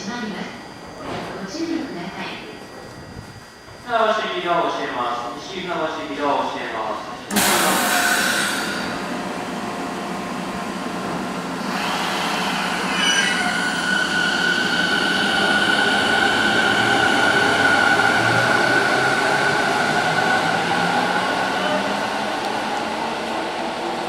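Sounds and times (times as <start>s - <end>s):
electric train pulling out: 7.3s - 24.0s
high-pitched squealing whine: 11.6s - 22.2s.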